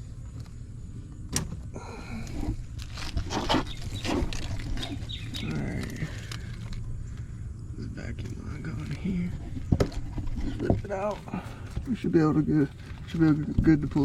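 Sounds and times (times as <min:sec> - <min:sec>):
low steady hum: 0:00.0 - 0:14.0
knocks clicks and scraping of parts: 0:02.2 - 0:06.8, 0:08.2 - 0:12.0.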